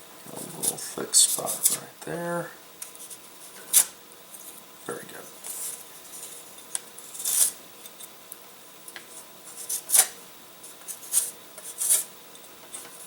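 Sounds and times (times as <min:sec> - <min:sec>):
hand tool scraping wood: 0:10.8 - 0:12.1.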